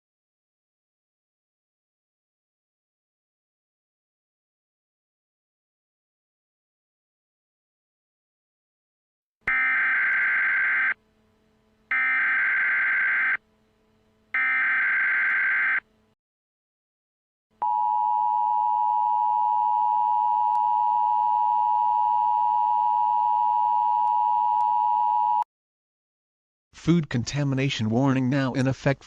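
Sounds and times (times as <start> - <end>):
buzzing data tone bursts: 9.5 - 11.0, 11.9 - 13.4, 14.3 - 15.8.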